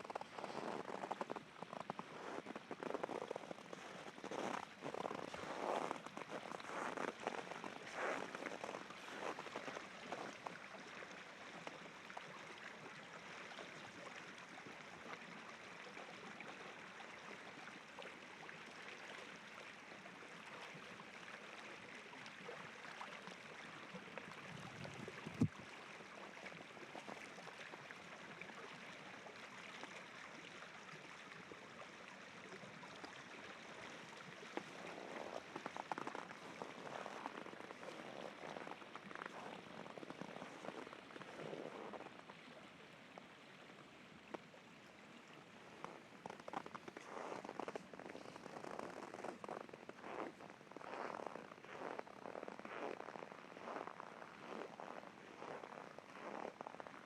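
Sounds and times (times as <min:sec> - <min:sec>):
footsteps crunching in snow: 0:00.1 - 0:01.3, 0:02.1 - 0:09.4.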